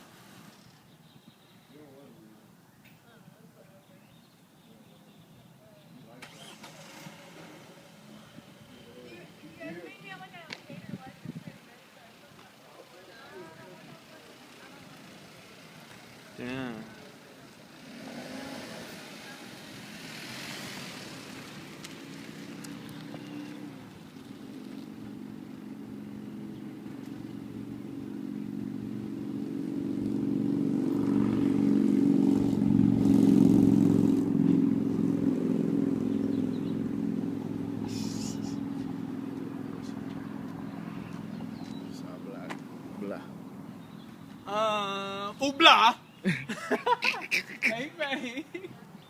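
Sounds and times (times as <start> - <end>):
vehicle engine passing by: 6.0 - 44.5.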